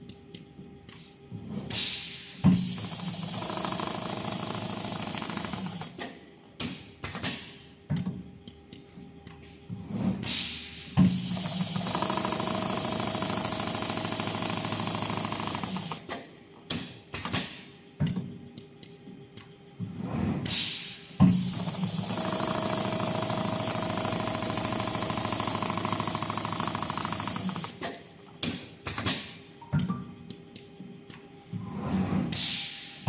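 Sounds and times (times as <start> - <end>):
machine mechanism clicks and clunks: 3.5 - 10.4, 11.0 - 19.6, 20.4 - 31.3
sewing machine stitching: 11.3 - 16.0, 21.5 - 27.8.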